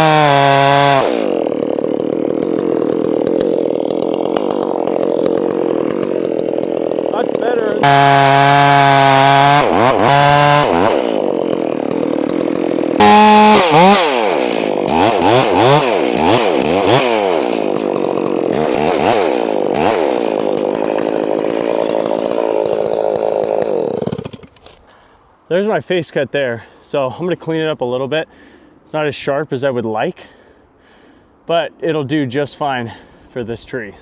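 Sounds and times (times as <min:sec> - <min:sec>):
chainsaw cutting wood: 0:00.0 - 0:25.1.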